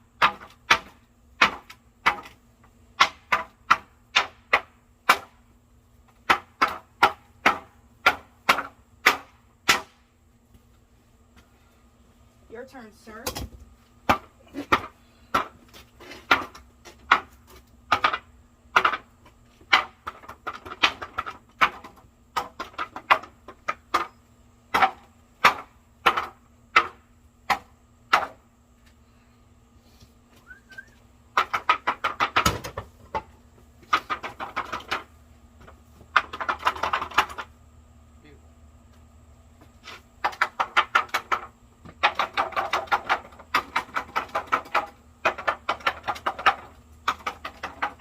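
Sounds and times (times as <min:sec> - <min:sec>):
tools striking wooden beam: 0:00.2 - 0:05.4, 0:06.1 - 0:10.1, 0:13.2 - 0:28.4, 0:30.7 - 0:37.5, 0:39.9 - 0:48.0.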